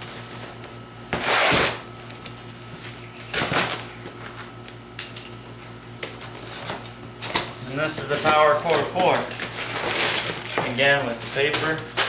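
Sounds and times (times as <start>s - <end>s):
packing paper rustling: 6.2s - 12.0s.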